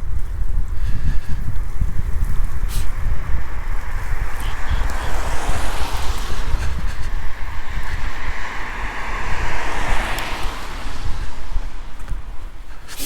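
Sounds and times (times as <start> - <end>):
wind buffeting microphone: 0.0 - 13.0
broad rushing hiss: 4.4 - 13.0.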